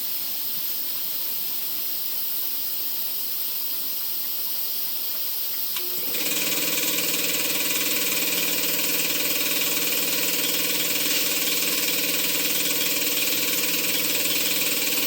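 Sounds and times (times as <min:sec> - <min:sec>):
soft hiss: 0:00.0 - 0:06.0
machine motor running: 0:05.8 - 0:15.0.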